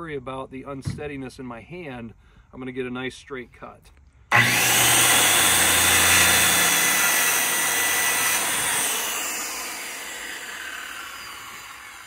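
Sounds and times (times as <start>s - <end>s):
circular saw cutting wood: 4.3s - 12.0s.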